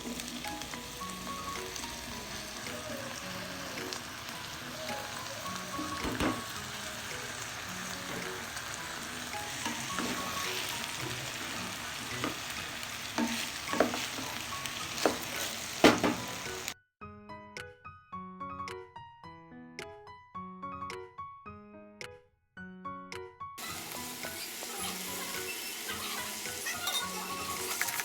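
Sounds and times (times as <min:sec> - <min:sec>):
food sizzling in hot oil: 0:00.0 - 0:16.8, 0:23.6 - 0:28.0
background music: 0:00.0 - 0:28.0.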